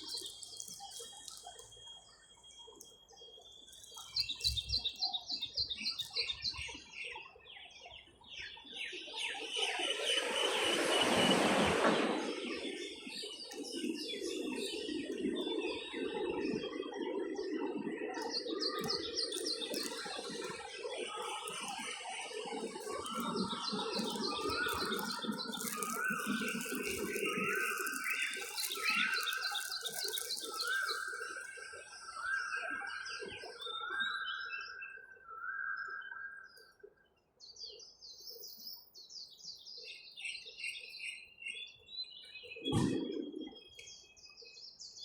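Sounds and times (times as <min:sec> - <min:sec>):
higher bird chirps: 0:18.2 - 0:32.2.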